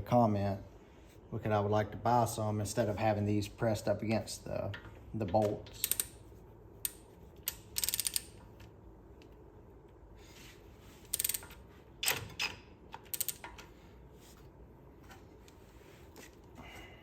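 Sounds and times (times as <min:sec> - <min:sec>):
ratchet wrench clicking: 0:05.8 - 0:06.1, 0:06.8 - 0:08.4, 0:11.1 - 0:13.5.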